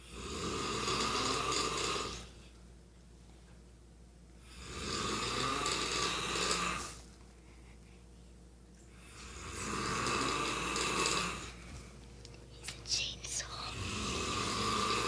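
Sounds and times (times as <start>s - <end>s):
man snoring: 0.0s - 2.3s, 4.4s - 7.0s, 9.0s - 11.6s, 13.7s - 15.0s.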